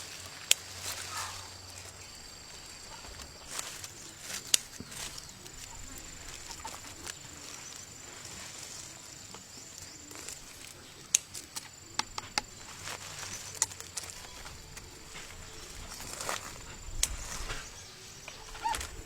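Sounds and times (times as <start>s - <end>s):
high-pitched insect drone: 0.0s - 19.0s
sharp clicks: 11.0s - 12.8s.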